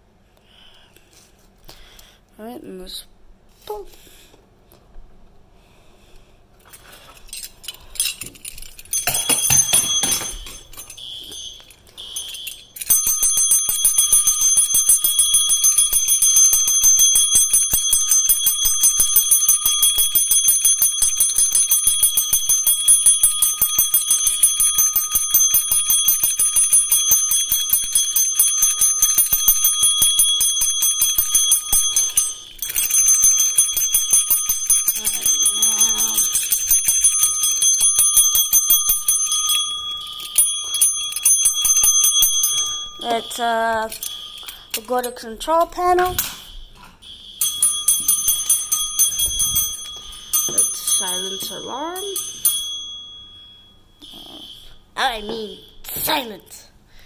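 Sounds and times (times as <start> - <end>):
fire alarm bell ringing: 8.9 - 56.3.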